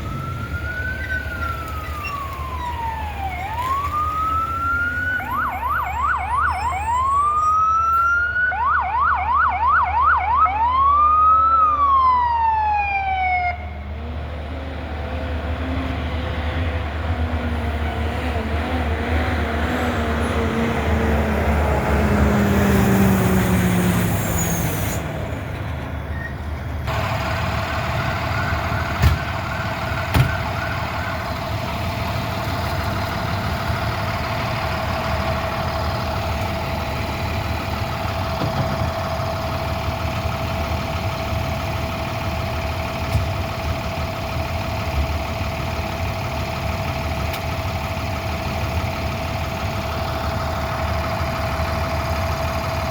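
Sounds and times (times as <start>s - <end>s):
truck engine idling: 25.2s - 52.9s.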